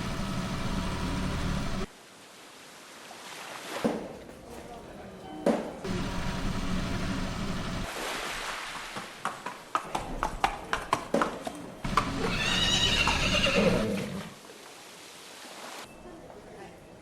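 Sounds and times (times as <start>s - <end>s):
high-pitched animal call: 12.1s - 14.1s.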